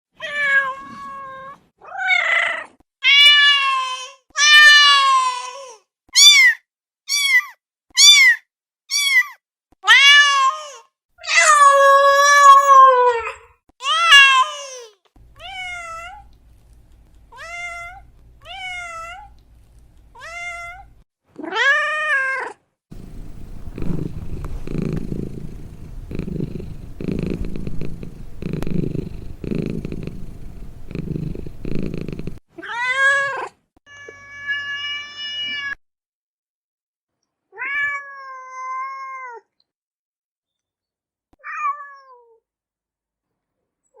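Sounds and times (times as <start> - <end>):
cat purring: 22.9 - 32.4.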